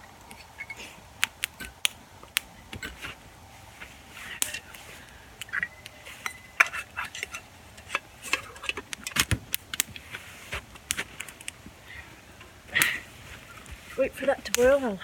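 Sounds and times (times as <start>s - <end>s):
metal pot clinking and rattling: 5.5s - 9.3s.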